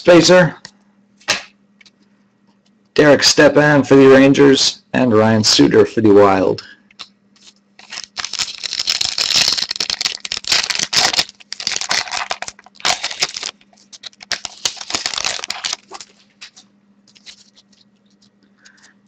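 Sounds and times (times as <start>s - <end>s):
faint electrical hum: 0.0s - 19.0s
foil wrapper tearing and crinkling: 7.4s - 18.8s.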